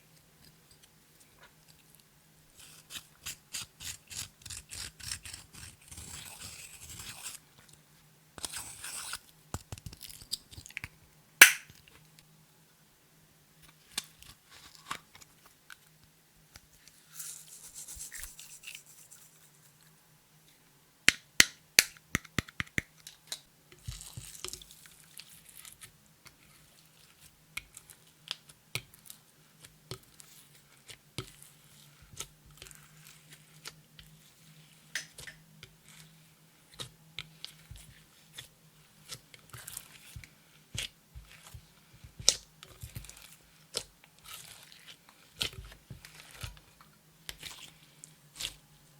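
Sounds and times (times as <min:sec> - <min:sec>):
sticky slime clicks and pops: 0:11.4 - 0:11.7.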